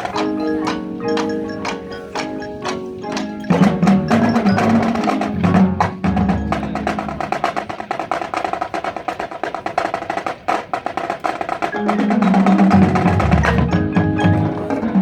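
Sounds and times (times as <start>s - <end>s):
mallet percussion notes: 0.0s - 8.1s, 11.4s - 15.0s
fast drum and stick strokes: 0.0s - 15.0s
marching band playing: 0.0s - 15.0s.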